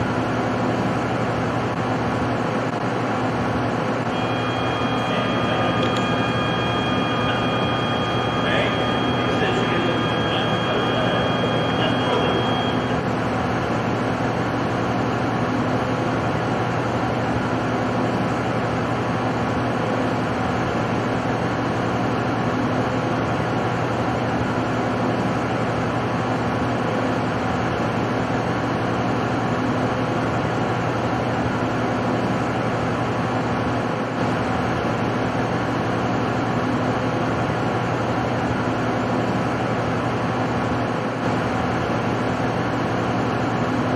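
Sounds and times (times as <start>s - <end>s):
welding machine hum and hiss: 0.0s - 43.9s
thin high tones: 4.1s - 13.1s.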